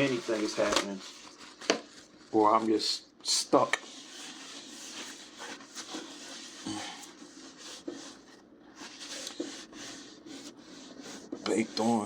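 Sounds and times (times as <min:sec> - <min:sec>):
paper towel rubbing on glass: 0:03.8 - 0:12.0.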